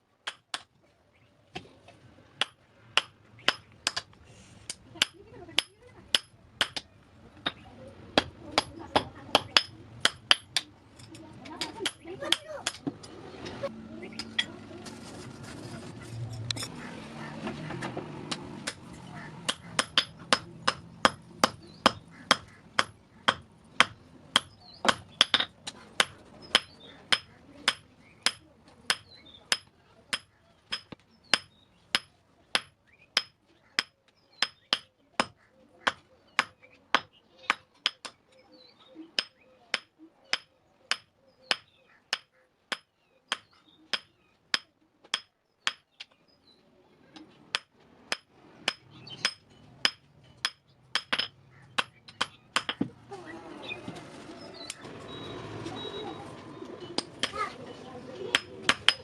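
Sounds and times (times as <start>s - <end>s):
hammer striking anvil: 47.5s - 52.9s, 58.3s - 59.0s.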